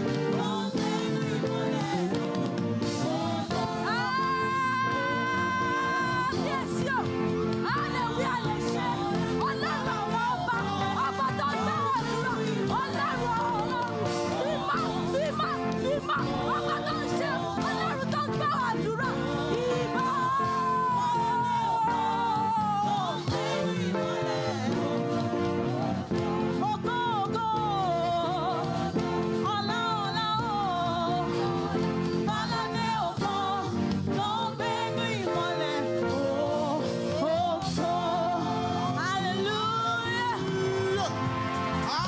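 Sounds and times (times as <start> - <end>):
person singing: 0.0 - 33.6
keyboard and band chords: 0.0 - 42.0.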